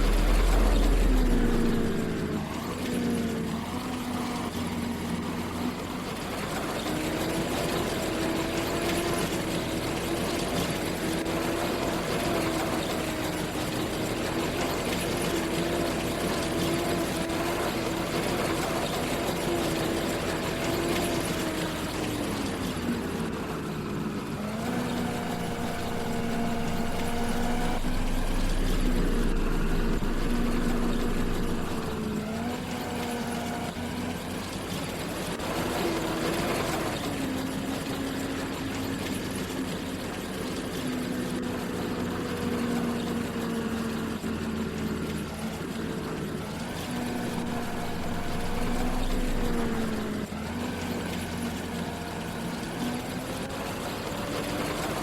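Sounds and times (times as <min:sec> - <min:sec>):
harvester engine running: 0:00.0 - 0:17.7, 0:24.4 - 0:33.6, 0:46.4 - 0:52.1.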